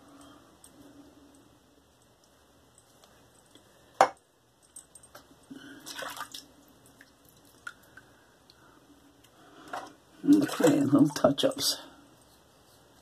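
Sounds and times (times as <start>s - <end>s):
water splashing and dripping: 5.8s - 8.0s, 10.2s - 11.3s.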